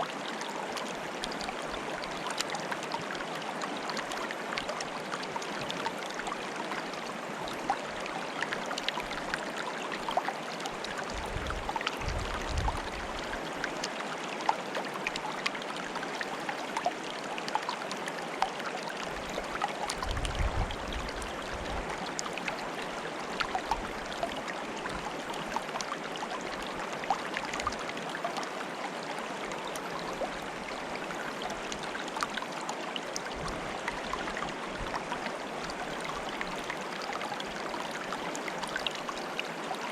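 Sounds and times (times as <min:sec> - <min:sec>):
stream water bubbling: 0:00.0 - 0:39.9.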